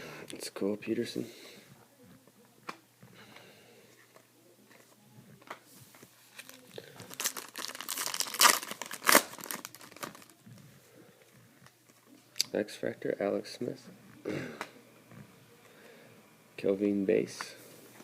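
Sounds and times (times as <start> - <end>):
plastic wrapper tearing and crinkling: 6.3 - 10.4.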